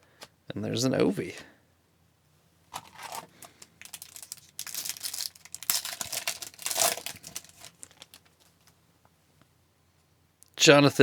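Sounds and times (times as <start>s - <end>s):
card pack wrapper crinkling and tearing: 2.7s - 8.7s.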